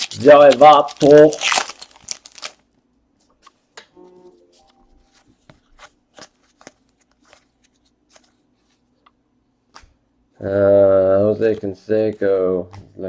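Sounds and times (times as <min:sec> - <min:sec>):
cards clicking and rustling: 0:00.0 - 0:02.5, 0:05.1 - 0:08.4.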